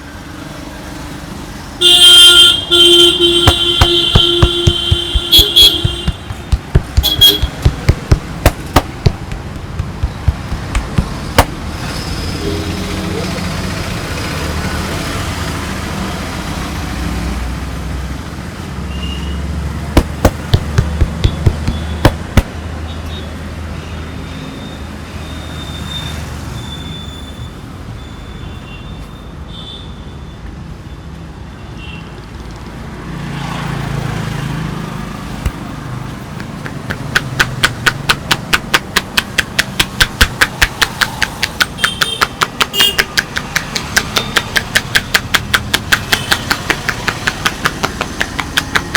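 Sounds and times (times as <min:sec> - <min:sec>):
street traffic rumble: 0:00.0 - 0:48.9
fast tapping: 0:03.3 - 0:11.7, 0:20.0 - 0:22.6, 0:36.3 - 0:48.9
hand slaps in massage: 0:03.4 - 0:11.6, 0:20.0 - 0:22.6, 0:35.4 - 0:35.7, 0:36.4 - 0:48.9.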